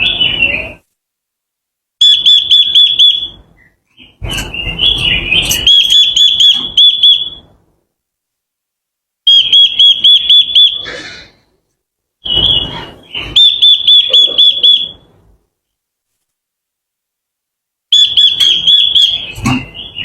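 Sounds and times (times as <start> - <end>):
songbird whistling: 2.0 - 7.5, 12.2 - 15.1, 17.9 - 20.0.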